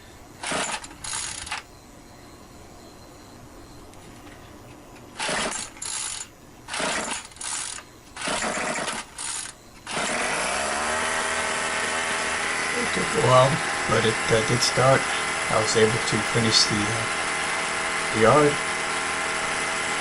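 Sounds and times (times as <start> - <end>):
string trimmer engine running: 9.9 - 20.0.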